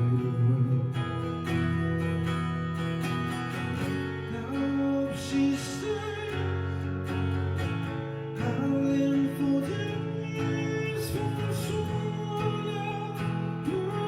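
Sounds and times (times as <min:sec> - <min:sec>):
person singing: 0:00.0 - 0:02.2, 0:04.3 - 0:06.7, 0:08.4 - 0:14.0
guitar playing: 0:00.0 - 0:14.0.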